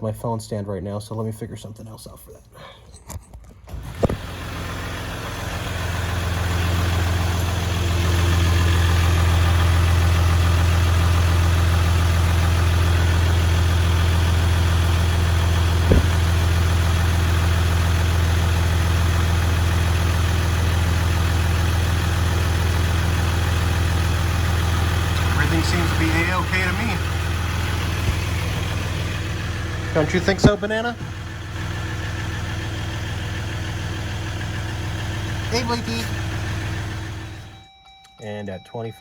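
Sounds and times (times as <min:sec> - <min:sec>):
diesel engine idling: 0:03.7 - 0:37.6
short engine knock: 0:03.8 - 0:18.1, 0:24.1 - 0:33.9.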